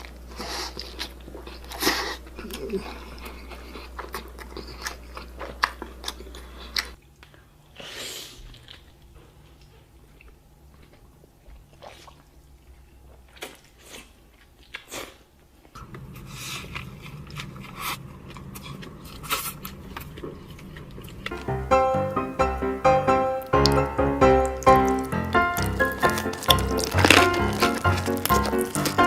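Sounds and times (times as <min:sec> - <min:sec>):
wet chewing: 0:00.0 - 0:07.4, 0:08.4 - 0:29.0
food crunching: 0:00.0 - 0:07.5, 0:08.4 - 0:29.0
low background hum: 0:00.0 - 0:07.8.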